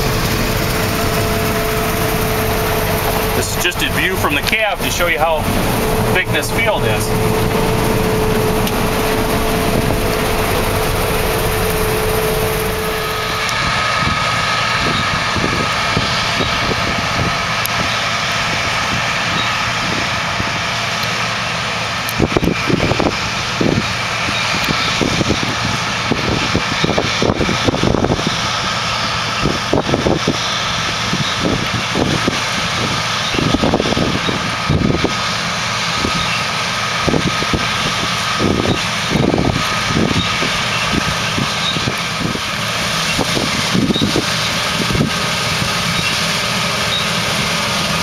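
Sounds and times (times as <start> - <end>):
combine harvester hum: 0.0 - 48.0
high machine whines: 0.0 - 48.0
sharp ticks and knocks: 8.4 - 9.0.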